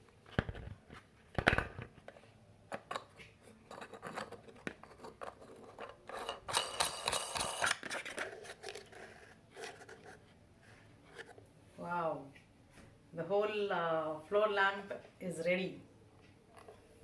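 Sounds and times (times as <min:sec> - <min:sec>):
plastic lamp parts clicking: 0:02.7 - 0:08.9
scraping and rustling: 0:03.0 - 0:11.4.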